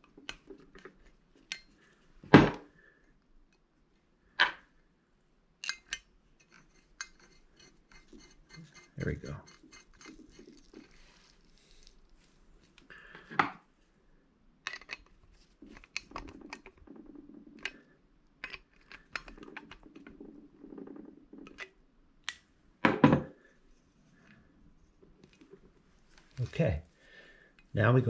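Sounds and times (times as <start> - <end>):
small metal parts clicking: 5.6 - 10.9.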